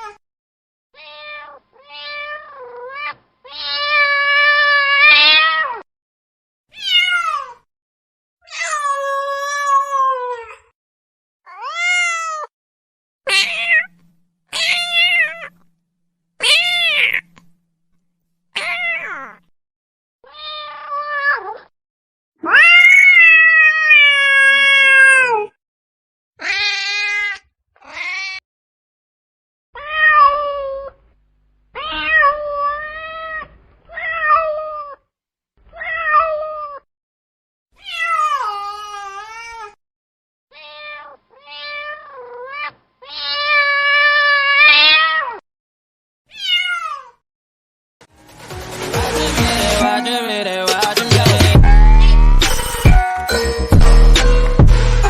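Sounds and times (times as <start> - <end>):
cats meowing: 1.0 - 5.9, 6.8 - 7.7, 8.5 - 10.7, 11.5 - 12.5, 13.3 - 15.7, 16.4 - 17.5, 18.6 - 19.5, 20.3 - 21.7, 22.4 - 25.5, 26.4 - 28.4, 29.8 - 31.0, 31.8 - 35.0, 35.7 - 36.9, 37.8 - 39.8, 40.5 - 45.4, 46.3 - 47.2, 51.6 - 54.1.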